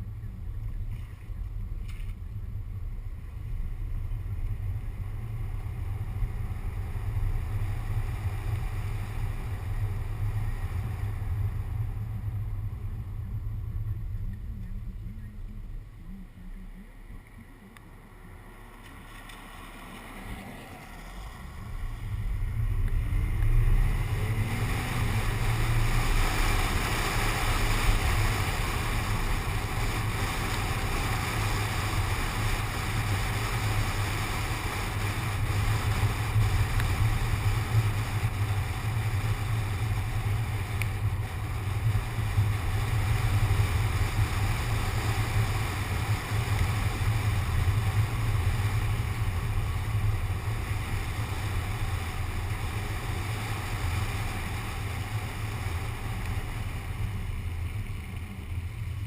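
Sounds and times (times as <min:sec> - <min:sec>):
car road noise rumble: 0:00.0 - 0:59.0
wind noise: 0:20.1 - 0:57.7.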